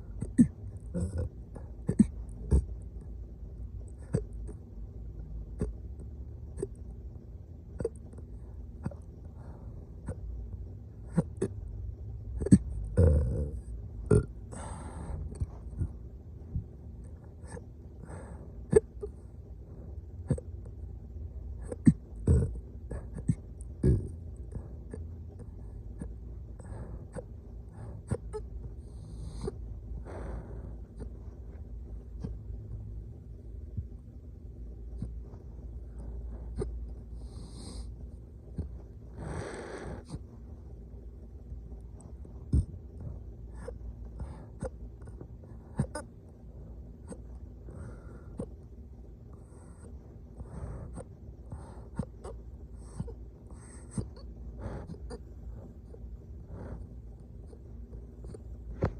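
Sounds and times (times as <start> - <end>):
low steady rumble: 0.0 - 58.9
person hiccupping: 0.2 - 2.7, 12.4 - 14.3.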